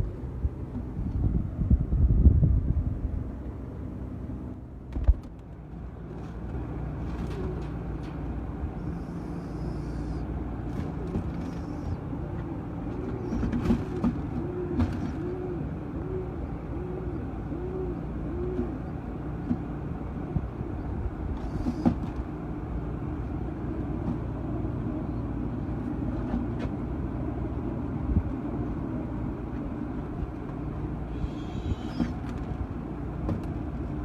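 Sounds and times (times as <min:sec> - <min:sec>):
low rumble: 0:00.0 - 0:06.4
pigeon cooing: 0:08.8 - 0:19.0, 0:20.3 - 0:22.1, 0:31.1 - 0:32.3.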